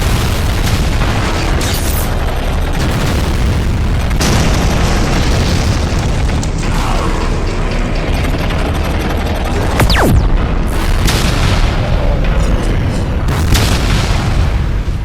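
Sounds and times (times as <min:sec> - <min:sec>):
explosion blasts: 0:00.0 - 0:08.4, 0:09.5 - 0:15.0
deep booming explosion rumble: 0:00.0 - 0:15.0.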